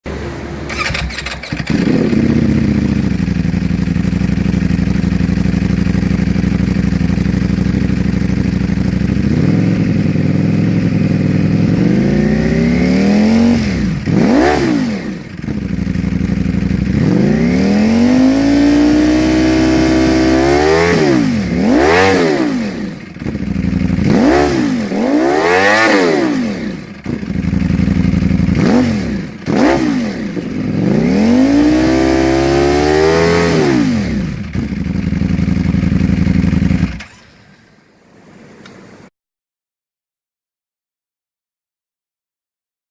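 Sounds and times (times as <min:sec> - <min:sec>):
motorcycle engine idling and revving: 0:00.1 - 0:37.6
quick throttle blips: 0:00.7 - 0:03.6.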